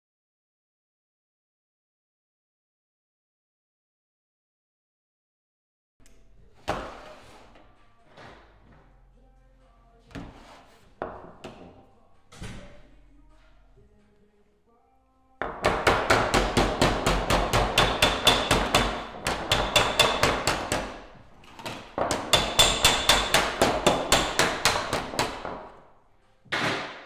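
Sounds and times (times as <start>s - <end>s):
hammer striking sheet metal: 15.6s - 21.1s, 21.8s - 25.6s.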